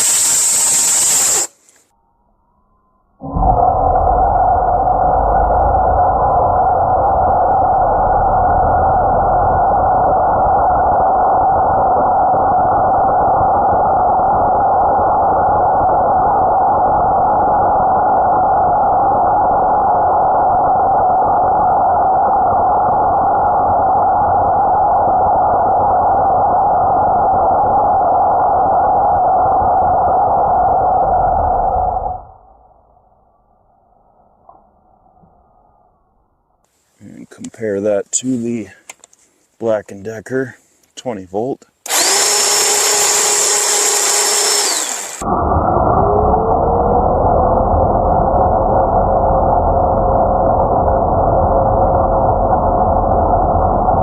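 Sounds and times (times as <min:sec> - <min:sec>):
cordless chainsaw whining: 0:00.0 - 0:01.7, 0:41.8 - 0:45.2.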